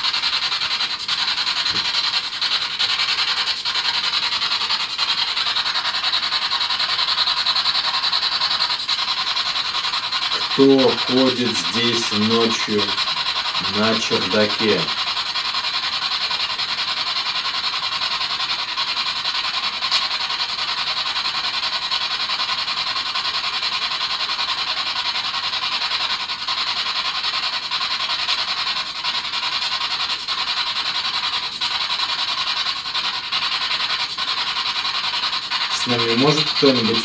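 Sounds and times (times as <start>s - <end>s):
radio static hiss: 10.3s - 15.0s, 35.7s - 37.0s.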